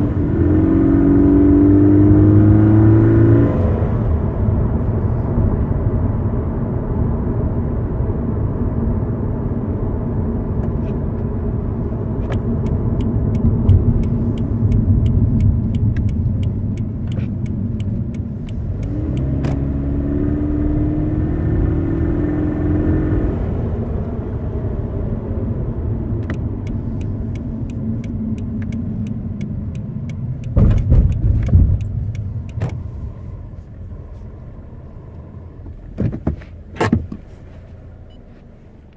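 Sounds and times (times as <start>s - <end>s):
car engine and road noise: 0.0s - 38.9s
trim rattle clicking: 26.1s - 34.0s.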